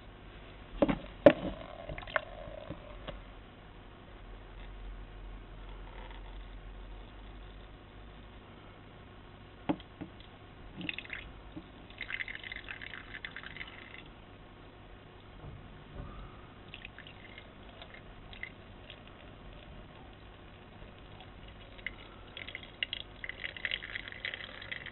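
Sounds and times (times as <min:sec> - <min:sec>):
water splashing and trickling: 0:16.7 - 0:19.2, 0:21.3 - 0:24.9.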